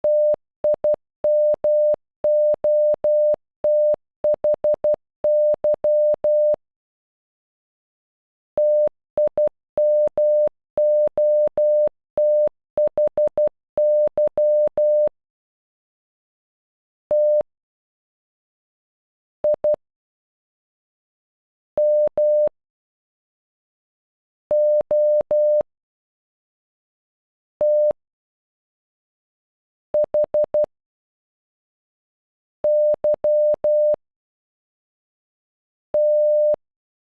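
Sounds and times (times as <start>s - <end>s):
morse code beeps: 0.1s - 6.6s, 8.6s - 15.1s, 21.8s - 22.5s, 32.7s - 34.0s, 36.0s - 36.6s.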